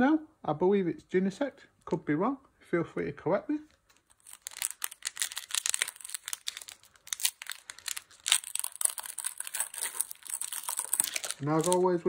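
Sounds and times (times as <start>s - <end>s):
foil wrapper crinkling and tearing: 3.9s - 12.0s.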